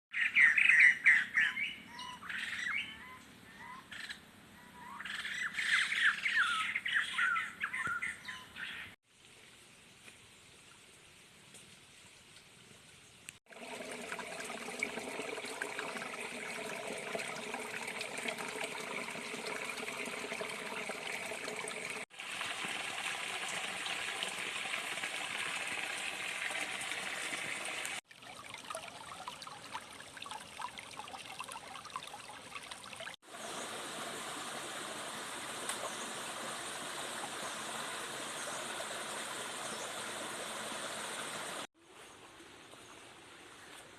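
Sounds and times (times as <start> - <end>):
stream water rushing: 13.5 - 41.7.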